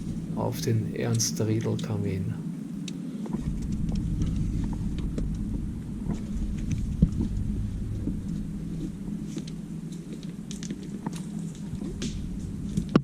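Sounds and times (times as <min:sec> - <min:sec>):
low microphone rumble: 0:00.0 - 0:13.0.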